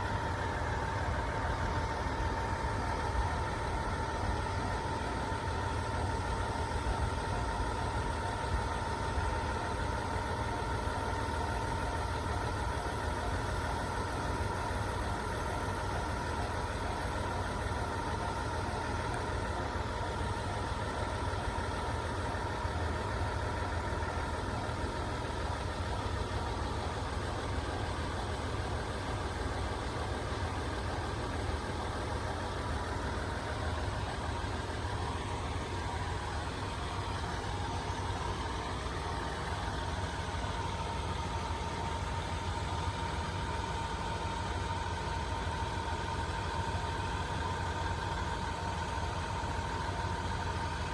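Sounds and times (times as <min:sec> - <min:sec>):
vehicle idling rumble: 0:00.0 - 0:50.9.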